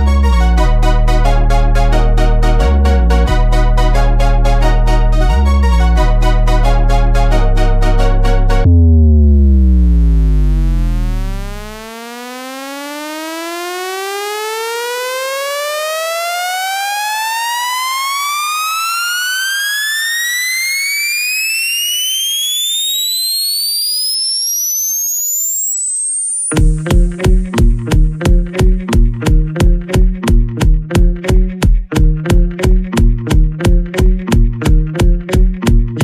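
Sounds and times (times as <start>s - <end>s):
bass-heavy music: 0.0s - 11.9s, 26.6s - 36.0s
test tone frequency sweep: 8.6s - 28.2s.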